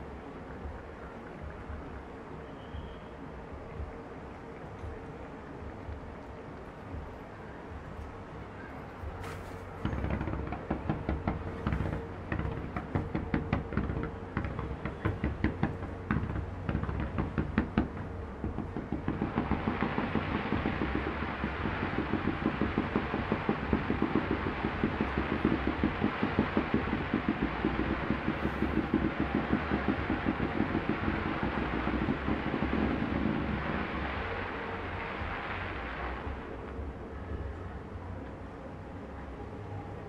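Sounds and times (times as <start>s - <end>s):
fireworks bangs and crackles: 9.0s - 36.5s.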